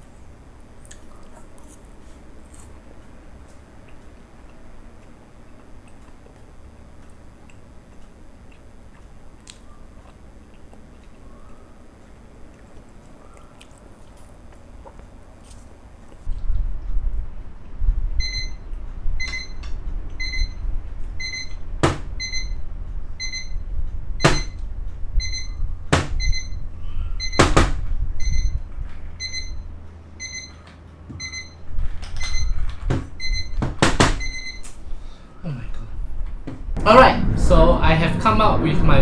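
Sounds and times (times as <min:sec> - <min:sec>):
timer alarm beeping: 0:18.2 - 0:22.6, 0:23.2 - 0:24.6, 0:25.2 - 0:27.6, 0:28.2 - 0:28.6, 0:29.2 - 0:30.6, 0:31.2 - 0:32.6, 0:33.2 - 0:33.6, 0:34.2 - 0:34.7.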